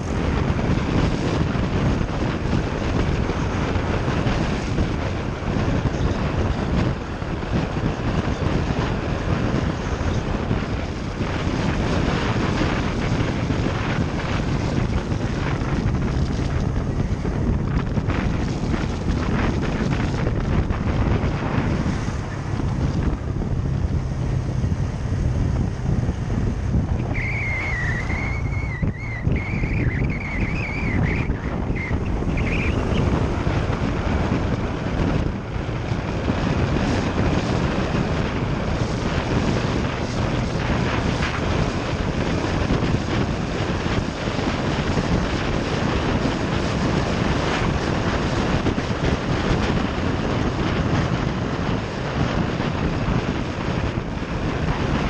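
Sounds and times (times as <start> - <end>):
motorcycle engine running: 0.0 - 55.0
wind noise on microphone: 0.0 - 55.0
wavering high whistle: 27.0 - 32.7.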